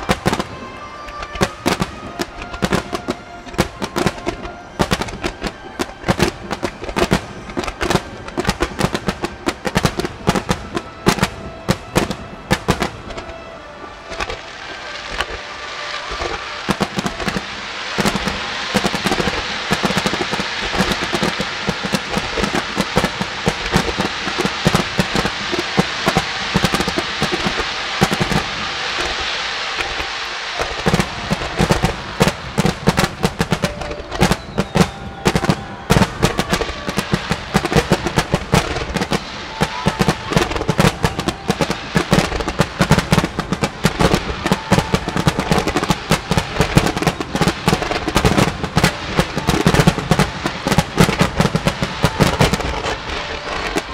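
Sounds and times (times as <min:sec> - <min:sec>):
fireworks bursting: 0:00.0 - 0:53.9.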